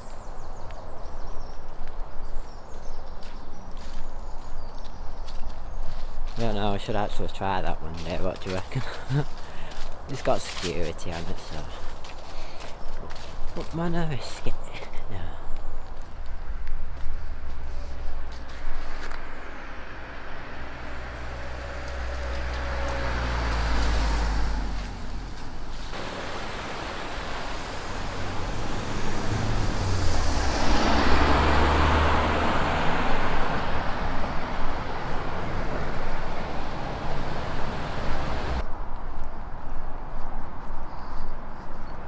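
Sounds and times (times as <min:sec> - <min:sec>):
vehicle tyre noise passing: 0:17.2 - 0:38.7
heavy vehicle engine passing: 0:18.9 - 0:38.6.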